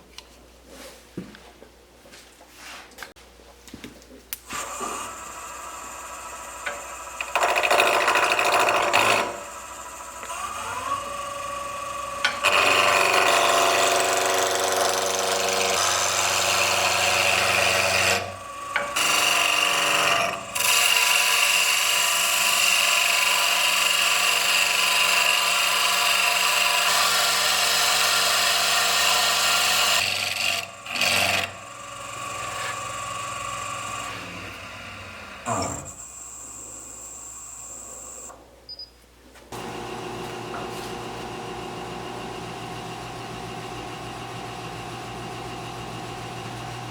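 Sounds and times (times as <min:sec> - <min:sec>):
tool scraping spinning wood: 0:04.5 - 0:36.0, 0:39.6 - 0:46.9
wood lathe running: 0:04.6 - 0:38.3, 0:39.6 - 0:46.9.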